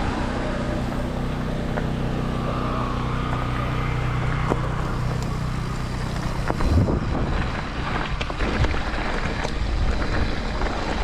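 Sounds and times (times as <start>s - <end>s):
bike clicks and rattles: 0.0s - 11.0s
bike tyres rolling: 0.0s - 11.0s
wind on microphone: 6.3s - 11.0s.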